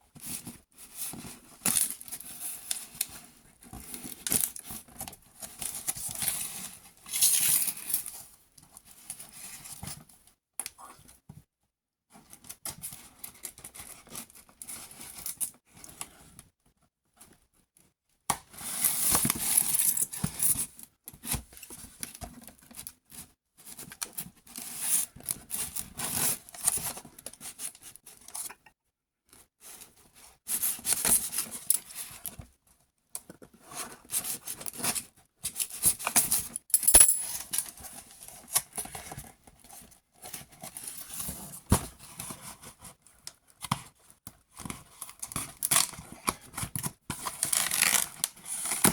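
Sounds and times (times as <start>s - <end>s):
plastic and cardboard crinkling: 44.6s - 48.9s.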